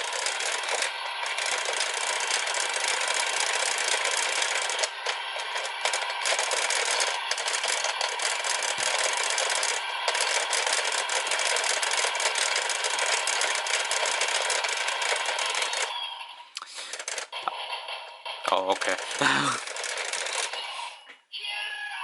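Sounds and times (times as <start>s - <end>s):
toy electronic sound effects: 15.4s - 16.5s.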